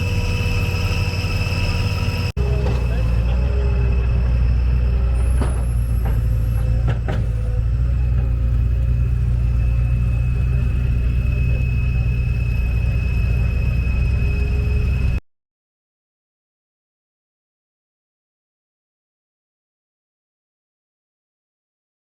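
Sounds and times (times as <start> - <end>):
heavy vehicle engine rumbling: 0.0 - 15.2
high-pitched whine: 0.0 - 15.2.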